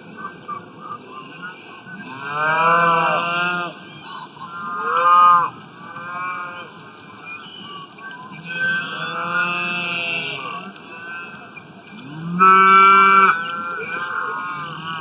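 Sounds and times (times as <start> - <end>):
cows mooing: 2.1 - 3.8, 4.5 - 6.8, 8.4 - 15.0.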